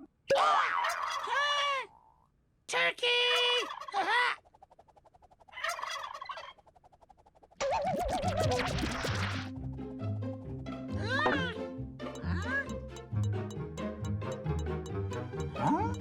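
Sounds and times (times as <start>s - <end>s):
turkey gobbling: 0.8s - 1.7s, 3.4s - 9.5s
music with warbling tone: 7.6s - 10.6s, 11.2s - 16.0s.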